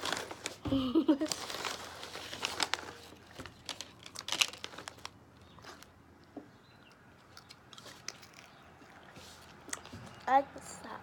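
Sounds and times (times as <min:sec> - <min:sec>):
plastic bag crinkling: 0:00.0 - 0:05.9.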